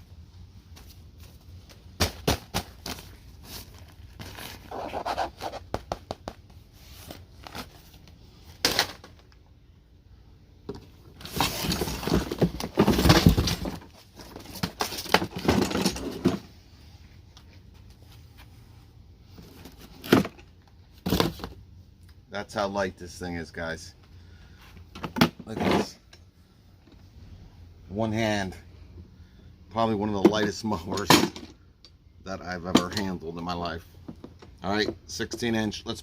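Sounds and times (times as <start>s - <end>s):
rustling and scraping: 0.6s - 9.3s, 10.7s - 21.6s.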